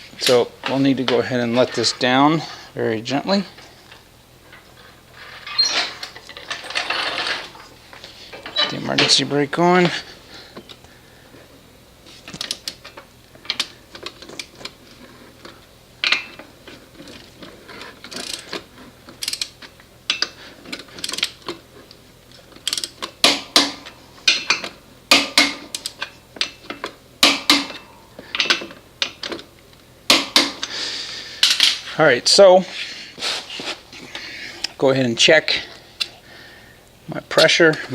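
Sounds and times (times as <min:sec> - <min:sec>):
torque wrench ratchet clicks: 0:18.1 - 0:18.4, 0:19.2 - 0:20.3, 0:21.0 - 0:21.4, 0:22.6 - 0:23.1.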